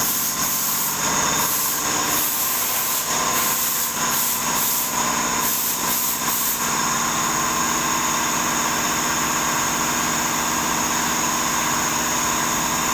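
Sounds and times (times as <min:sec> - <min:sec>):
cnc milling machine whine: 0:00.1 - 0:04.1.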